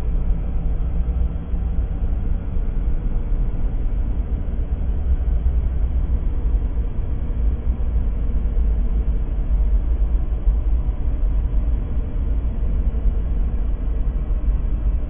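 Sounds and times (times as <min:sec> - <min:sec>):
low rumble: 0:00.0 - 0:15.0.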